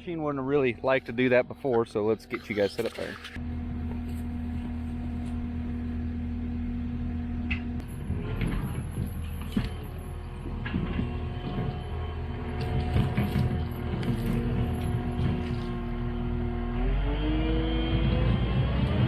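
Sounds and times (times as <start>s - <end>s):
loader diesel engine running: 3.2s - 19.0s
knocks and clanks: 7.5s - 16.2s.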